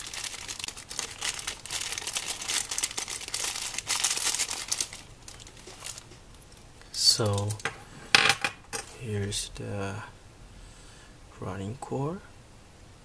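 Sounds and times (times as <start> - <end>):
packaging crinkling and tearing: 0.0 - 6.6.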